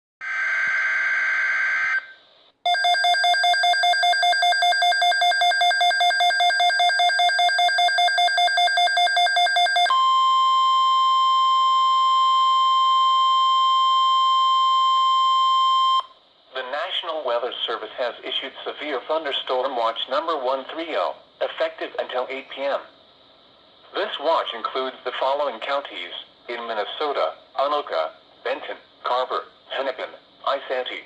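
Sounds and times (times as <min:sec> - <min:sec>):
steady warning alarm tone: 0:02.7 - 0:13.0.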